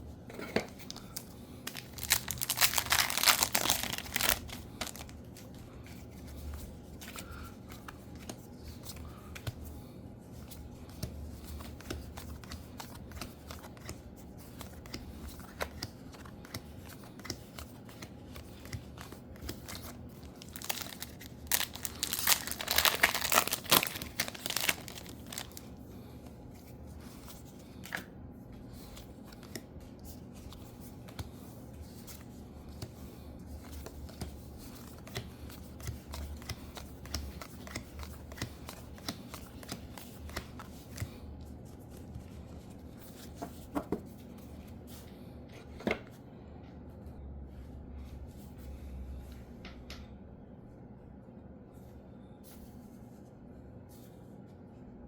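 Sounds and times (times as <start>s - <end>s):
wrappers crinkling and tearing: 0.9s - 5.2s, 19.1s - 25.7s.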